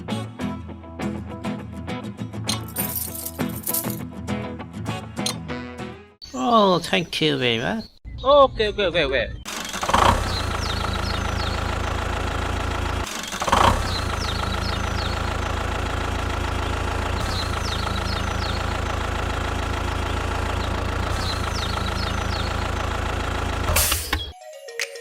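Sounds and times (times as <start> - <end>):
birds chirping: 6.2 - 24.4
tractor engine idling: 9.5 - 24.3.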